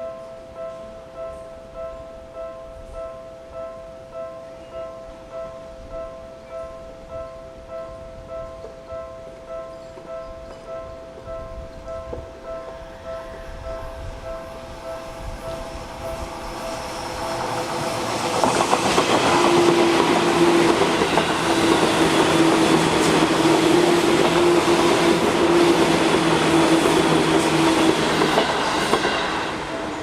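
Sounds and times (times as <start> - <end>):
level crossing alarm ringing: 6.6 - 30.0
train motor hum: 15.1 - 30.0
train wheels clacking over rail joints: 16.7 - 29.7.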